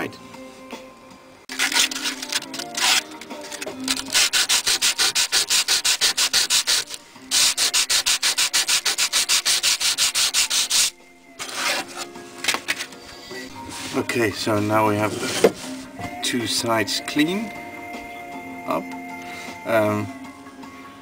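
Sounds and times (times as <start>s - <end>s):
sandpaper rubbing on metal blade: 1.5s - 14.0s, 14.9s - 15.9s.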